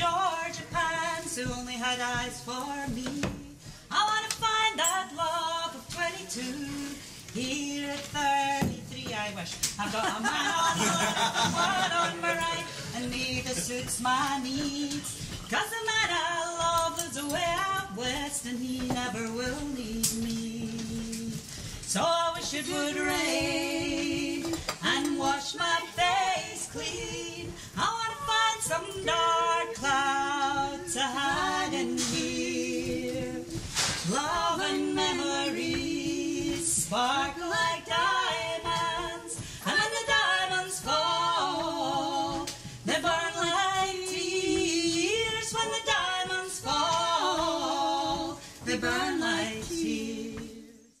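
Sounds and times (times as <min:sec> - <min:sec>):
women singing in harmony: 0:00.0 - 0:51.0.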